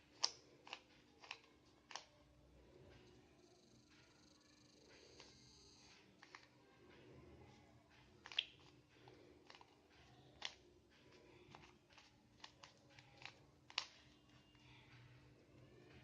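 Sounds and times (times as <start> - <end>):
puzzle cube clicking: 0.0 - 2.1, 8.2 - 10.7, 11.5 - 14.2.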